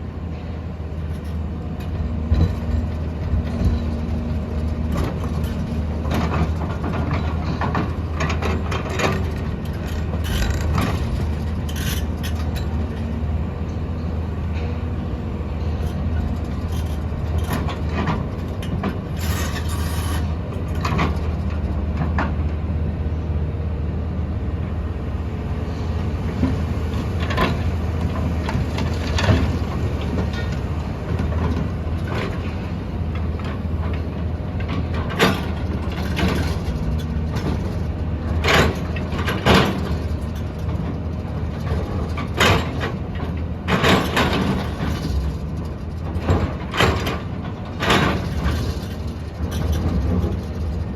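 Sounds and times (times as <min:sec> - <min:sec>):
diesel engine running under load: 0:00.0 - 0:50.9
metallic clanks and scrapes: 0:04.9 - 0:13.1, 0:15.6 - 0:21.2.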